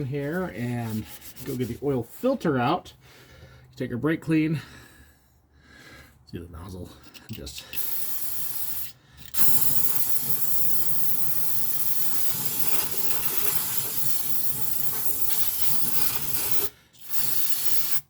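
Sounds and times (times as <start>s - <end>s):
aerosol can spraying: 7.7s - 18.0s.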